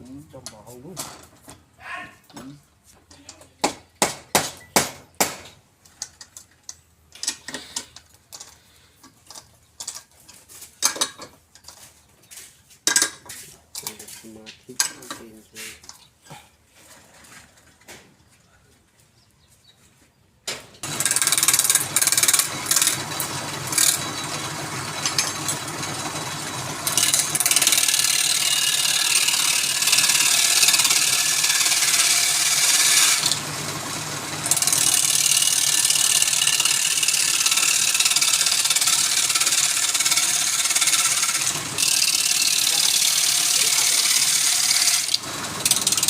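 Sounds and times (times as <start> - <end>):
lathe motor hum: 20.8 - 46.0
tool cutting spinning wood: 20.8 - 46.0.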